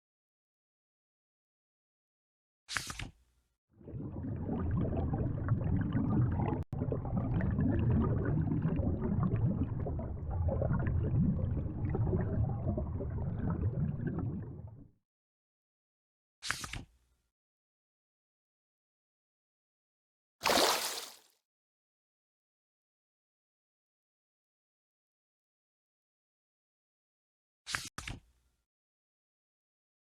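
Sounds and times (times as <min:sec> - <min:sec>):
gurgling bubbling water: 0:03.8 - 0:15.0.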